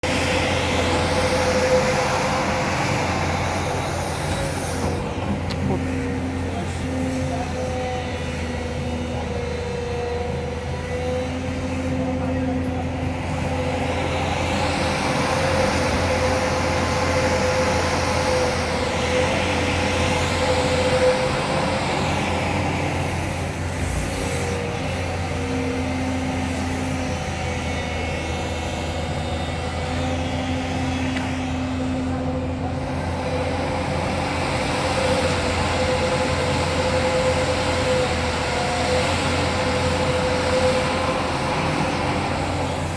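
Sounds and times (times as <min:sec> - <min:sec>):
excavator diesel engine running: 0:00.0 - 0:42.9
hydraulic whine and hiss: 0:12.7 - 0:42.9.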